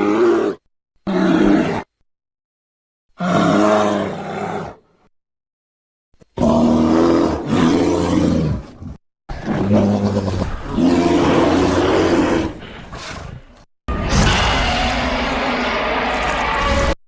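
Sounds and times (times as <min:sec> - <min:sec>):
imitation monster roars: 0:09.3 - 0:12.8, 0:13.9 - 0:17.0.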